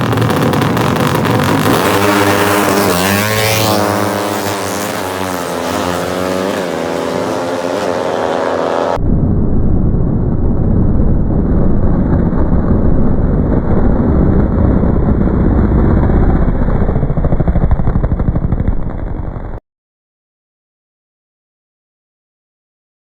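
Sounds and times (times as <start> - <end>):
motorcycle engine revving: 0.0 - 9.0.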